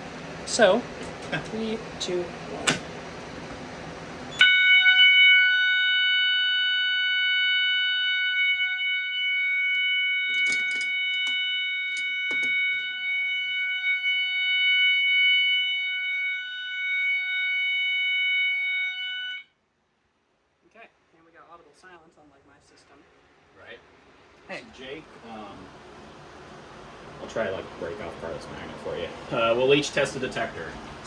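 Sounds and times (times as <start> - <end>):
fire alarm steady tone: 4.3 - 19.5.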